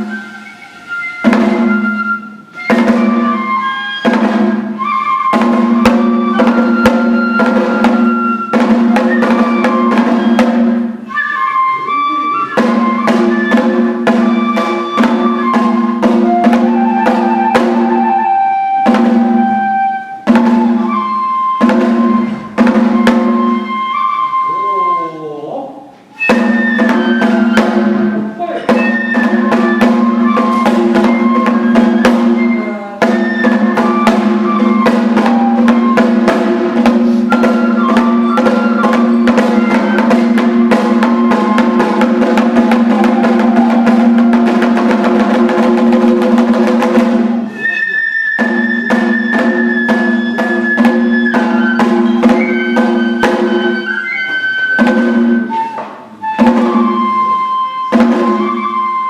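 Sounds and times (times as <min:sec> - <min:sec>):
sustained flute lines: 0:00.0 - 0:59.0
fast dense drumming: 0:01.2 - 0:11.1, 0:12.5 - 0:19.6, 0:26.3 - 0:47.6.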